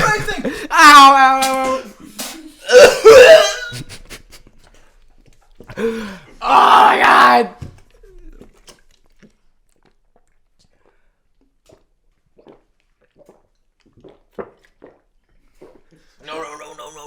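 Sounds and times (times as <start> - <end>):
wet mouth sounds: 1.5 - 5.9, 7.9 - 17.0.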